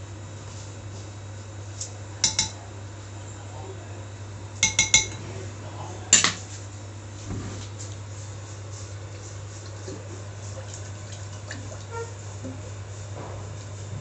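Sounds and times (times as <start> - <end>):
metal utensil clinking on dish: 2.2 - 2.6, 4.6 - 5.2.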